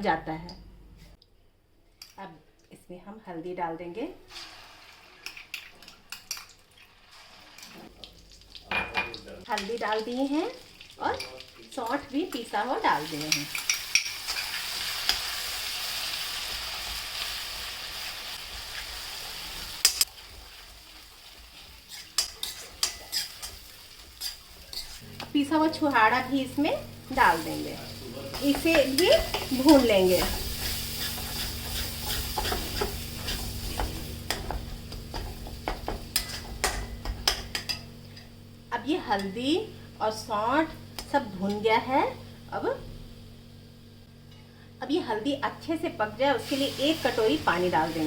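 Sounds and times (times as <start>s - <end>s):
spices sizzling in hot oil: 4.3s - 43.4s, 46.0s - 48.0s
spoon scraping a pan: 21.6s - 25.0s, 28.3s - 38.3s.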